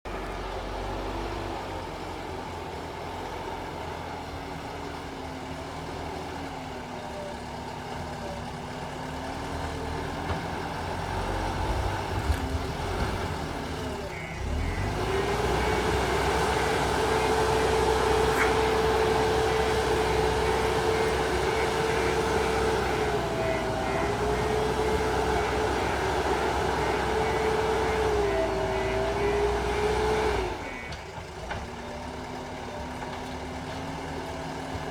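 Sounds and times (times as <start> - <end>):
diesel engine running: 0.1 - 34.9.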